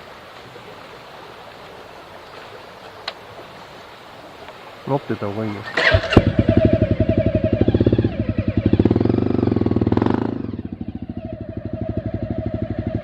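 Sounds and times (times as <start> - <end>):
motorcycle engine idling and revving: 5.6 - 13.0.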